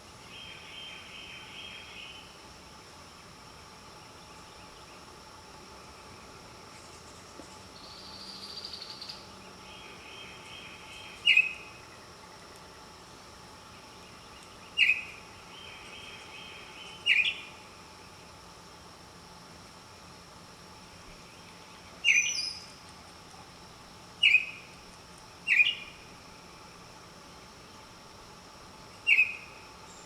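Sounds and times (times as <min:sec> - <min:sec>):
faint steady background hum: 0:00.0 - 0:30.0
bird calls: 0:09.8 - 0:11.7, 0:14.1 - 0:17.5, 0:21.4 - 0:22.8, 0:24.2 - 0:24.7, 0:25.4 - 0:26.0, 0:29.0 - 0:30.0.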